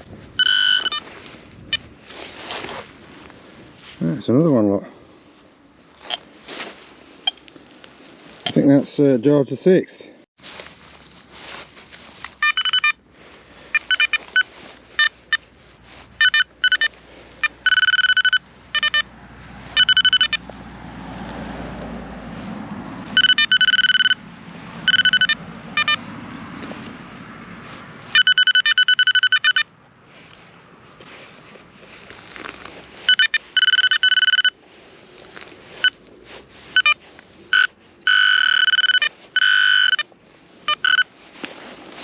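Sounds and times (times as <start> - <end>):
metal detector beeping: 0.0 - 1.9, 7.2 - 7.4, 12.4 - 13.0, 13.7 - 15.5, 16.2 - 19.1, 19.8 - 20.4, 23.1 - 24.2, 24.8 - 26.0, 28.1 - 29.7, 33.1 - 34.6, 35.8 - 36.0, 36.7 - 41.1.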